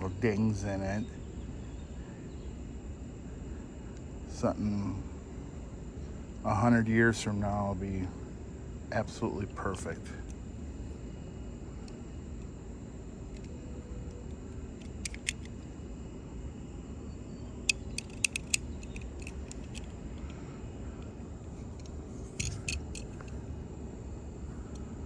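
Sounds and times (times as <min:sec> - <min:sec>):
steady low hum: 0:00.0 - 0:25.0
small sharp metallic clicks: 0:13.3 - 0:15.7, 0:17.7 - 0:20.4, 0:21.0 - 0:23.4.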